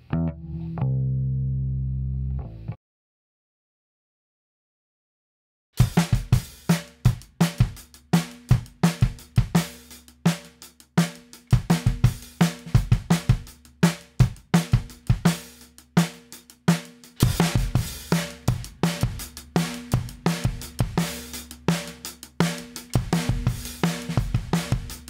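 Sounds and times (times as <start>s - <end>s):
drum kit playing a beat: 5.8s - 25.0s.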